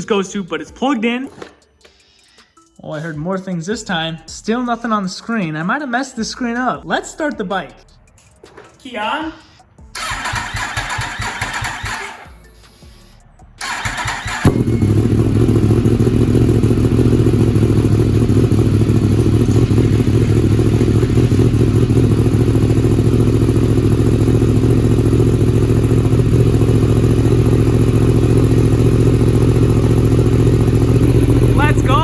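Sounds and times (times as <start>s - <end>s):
motorcycle engine starting and idling: 10.0s - 12.4s, 13.6s - 32.0s.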